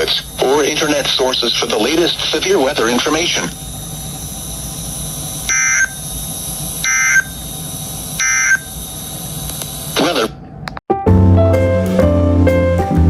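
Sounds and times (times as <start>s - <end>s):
digital warble bursts: 0.0s - 6.2s
steady radio hiss: 0.0s - 10.6s.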